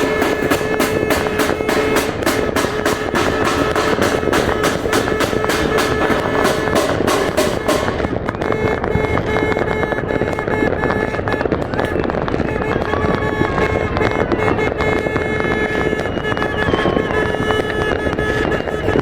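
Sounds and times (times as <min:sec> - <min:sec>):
loud music: 0:00.0 - 0:08.3
fireworks bursting and crackling: 0:00.0 - 0:19.0.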